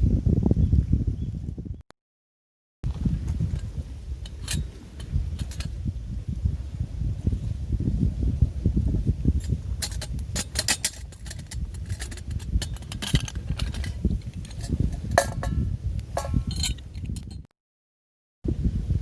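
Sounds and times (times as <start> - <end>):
wind rumble on microphone: 0.0 - 1.9, 2.8 - 17.5, 18.4 - 19.0
metal cookware clinking: 3.6 - 5.7, 9.4 - 17.5.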